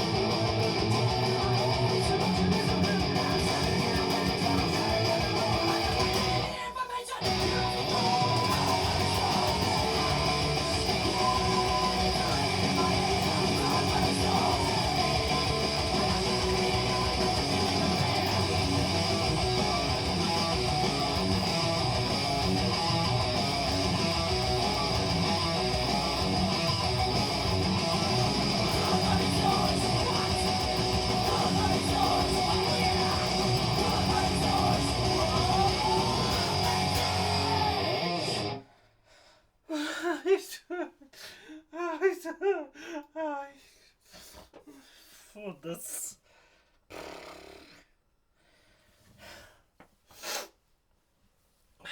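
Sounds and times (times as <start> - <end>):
electric guitar metal riffs: 0.0 - 6.6, 7.2 - 38.6.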